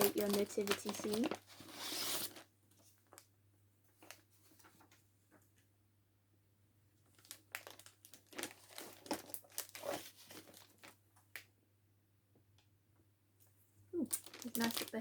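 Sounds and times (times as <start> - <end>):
packaging crinkling and rustling: 0.0 - 3.3, 7.0 - 11.4, 14.0 - 15.0.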